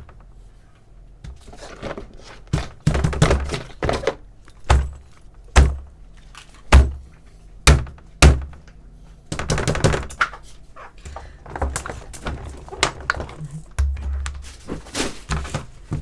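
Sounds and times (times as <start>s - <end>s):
dull thuds of fidget toys: 5.6s - 5.9s.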